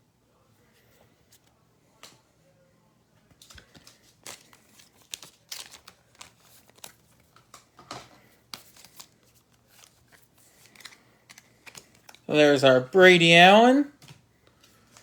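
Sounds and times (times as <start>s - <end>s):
plastic packaging crinkling: 3.4s - 7.7s.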